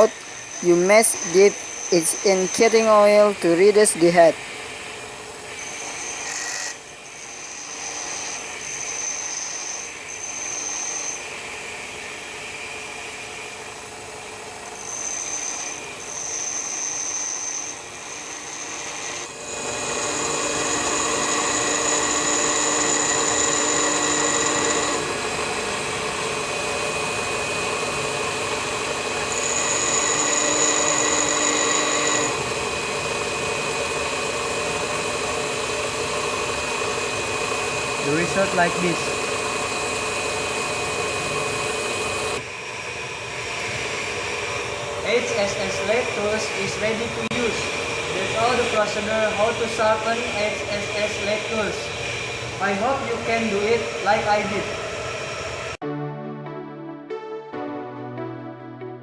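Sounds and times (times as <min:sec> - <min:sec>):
bench grinder grinding metal: 0:00.0 - 0:04.4, 0:05.5 - 0:11.4, 0:14.6 - 0:42.5, 0:43.4 - 0:55.8.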